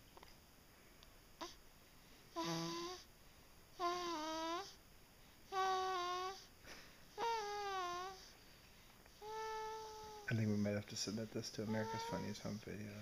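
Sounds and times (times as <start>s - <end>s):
girl snoring: 2.4s - 3.1s, 3.8s - 4.8s, 5.5s - 6.5s, 7.2s - 8.3s, 9.2s - 10.2s.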